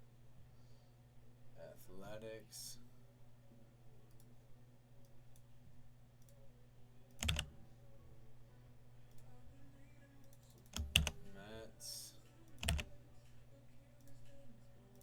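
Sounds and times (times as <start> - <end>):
steady low hum: 0.0 - 15.0
keyboard and mouse clicks: 7.1 - 7.6, 10.2 - 11.3, 12.5 - 13.0.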